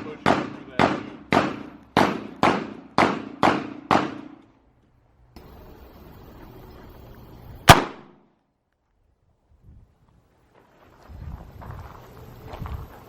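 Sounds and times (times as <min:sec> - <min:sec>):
gunshots: 0:00.0 - 0:04.4, 0:07.6 - 0:08.2.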